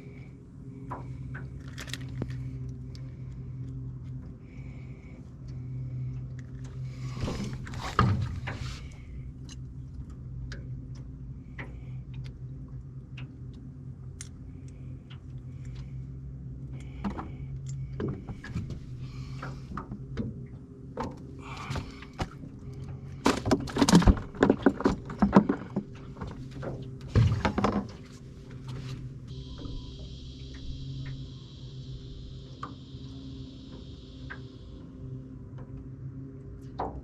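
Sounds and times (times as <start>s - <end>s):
low hum: 0.0s - 37.0s.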